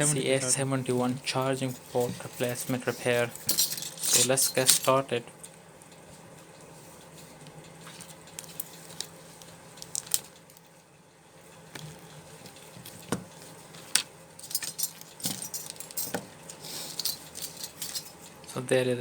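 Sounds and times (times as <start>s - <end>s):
metal tools clinking: 2.4s - 5.1s, 13.8s - 18.4s.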